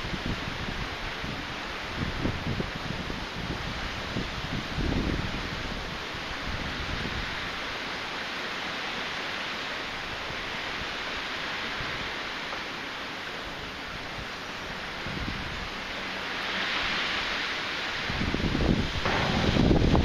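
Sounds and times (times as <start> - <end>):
wind buffeting microphone: 0.0 - 7.6, 13.8 - 20.0
wind rushing: 14.8 - 20.0.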